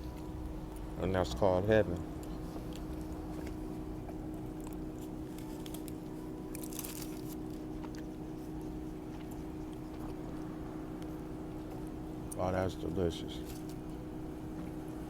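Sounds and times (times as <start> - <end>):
low hum: 0.0 - 15.0
person chewing food: 2.0 - 10.5.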